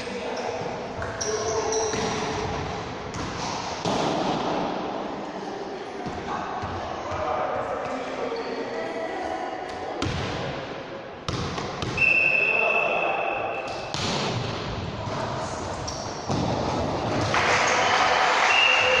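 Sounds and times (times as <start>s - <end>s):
referee's whistle blast: 12.0s - 13.7s.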